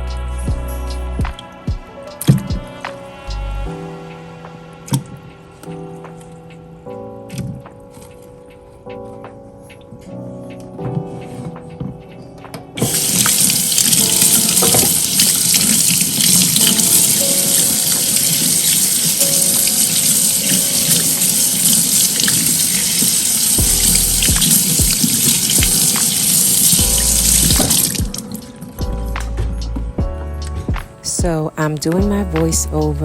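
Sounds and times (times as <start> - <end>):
soft background music: 0.0 - 33.0
tap water running into sink: 12.8 - 28.4.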